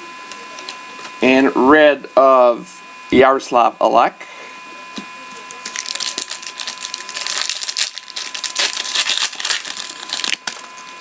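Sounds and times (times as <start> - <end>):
packaging crinkling: 5.5 - 11.0.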